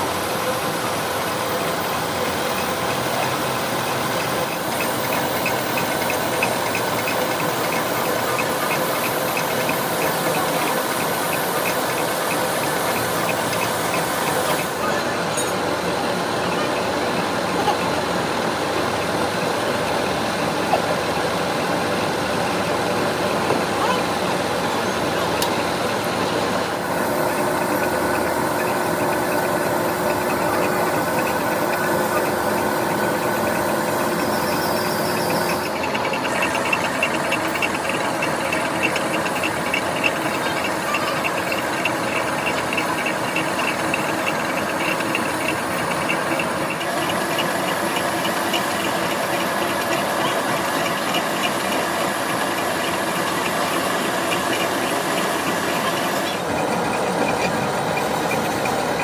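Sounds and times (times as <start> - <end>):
fine rattling chatter: 0.0 - 59.0
machine cutting steel: 0.0 - 59.0.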